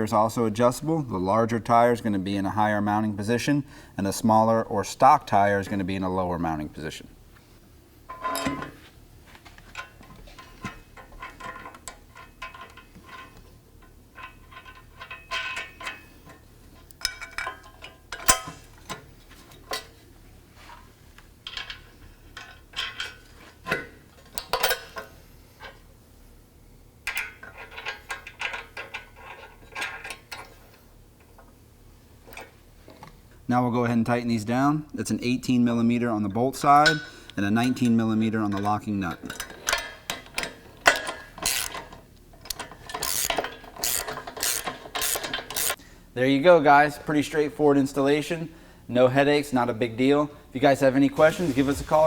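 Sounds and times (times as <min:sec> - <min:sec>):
metal parts and bolts clinking: 0:08.1 - 0:08.8, 0:09.7 - 0:16.4, 0:17.0 - 0:19.0, 0:21.4 - 0:25.0, 0:36.8 - 0:45.8.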